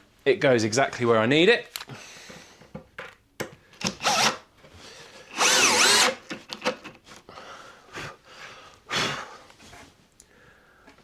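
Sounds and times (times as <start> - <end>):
power drill driving screw: 3.8 - 4.4, 5.3 - 6.2.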